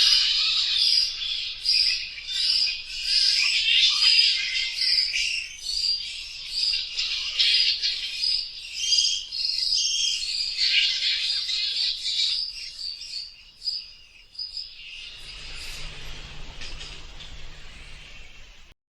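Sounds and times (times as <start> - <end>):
bats squeaking and chittering: 0.0 - 18.7
faint hiss: 14.9 - 18.7
low hum: 15.0 - 18.8.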